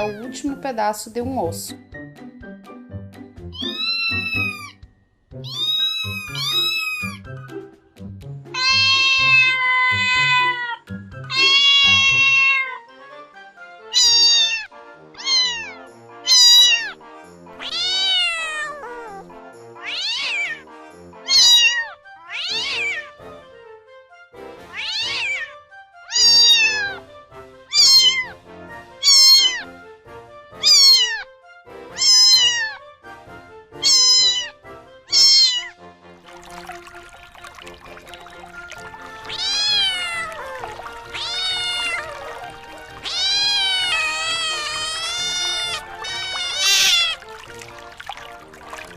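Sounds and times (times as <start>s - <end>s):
cat meowing: 3.5s - 4.8s, 5.4s - 7.2s, 8.6s - 12.9s, 13.9s - 17.0s, 17.6s - 19.2s, 19.8s - 20.6s, 21.3s - 23.1s, 24.7s - 27.0s, 27.7s - 28.4s, 29.0s - 29.7s, 30.6s - 31.3s, 31.9s - 32.8s, 33.8s - 35.8s, 38.6s - 48.9s.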